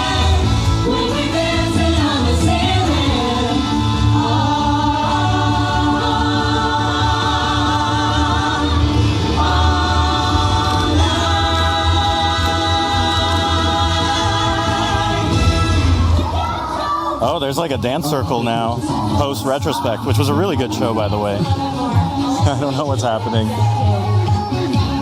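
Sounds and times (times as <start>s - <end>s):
steady bass line: 0.0s - 16.4s.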